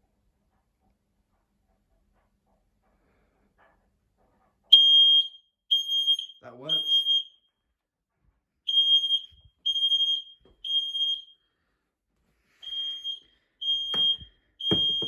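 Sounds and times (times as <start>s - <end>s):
smoke alarm beeping: 4.7s - 7.5s, 8.7s - 11.5s, 12.6s - 15.0s.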